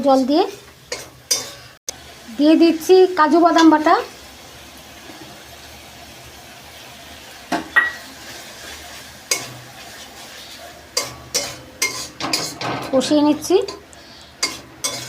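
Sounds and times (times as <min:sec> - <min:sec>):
paste sizzling in a pan: 0:00.0 - 0:15.0
metal spatula knocking pan: 0:11.0 - 0:13.8.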